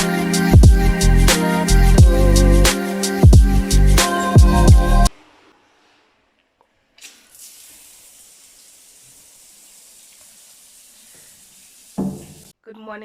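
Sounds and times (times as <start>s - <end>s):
faint steady hiss: 5.1s - 12.5s.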